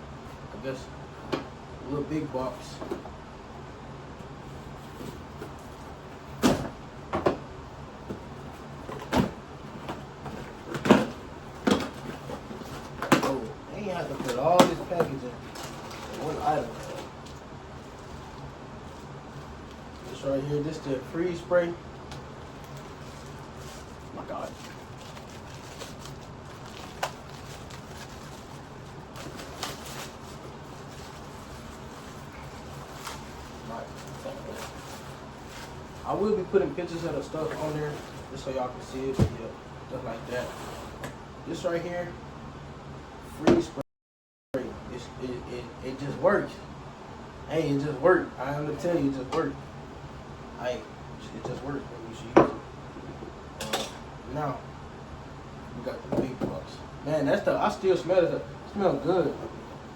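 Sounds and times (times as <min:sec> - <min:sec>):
steady low hum: 0:00.0 - 0:43.8, 0:44.6 - 0:59.9
cardboard and packaging rustling: 0:08.0 - 0:39.5.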